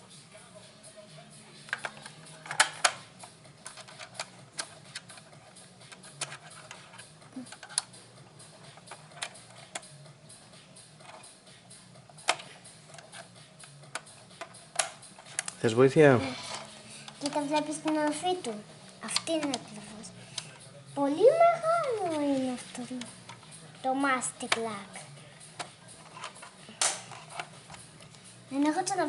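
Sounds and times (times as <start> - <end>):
plastic toy parts clicking: 1.7 - 3.0, 3.6 - 5.3, 5.9 - 7.9, 19.1 - 19.7.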